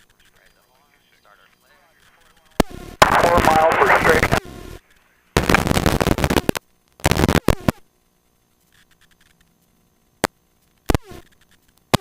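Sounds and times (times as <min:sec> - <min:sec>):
radio static bursts: 0:00.0 - 0:07.8.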